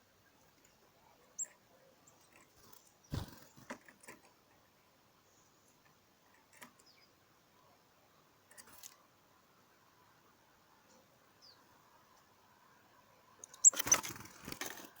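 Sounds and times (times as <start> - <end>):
bird chirp: 0.2 - 3.6, 6.7 - 7.2, 11.4 - 11.7, 13.4 - 14.1.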